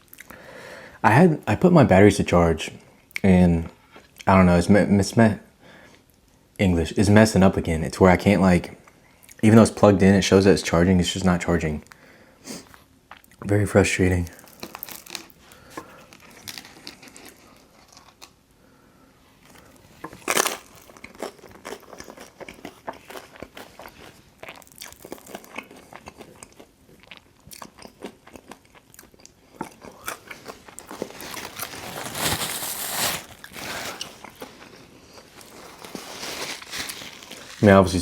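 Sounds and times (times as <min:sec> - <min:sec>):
biting and chewing pizza: 0:14.4 - 0:18.4, 0:19.4 - 0:37.7.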